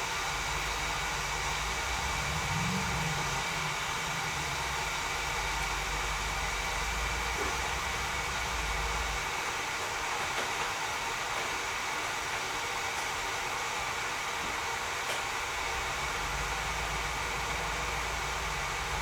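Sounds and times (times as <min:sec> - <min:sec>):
low hum: 0:00.0 - 0:09.2
kettle water rushing and hissing: 0:00.0 - 0:19.0.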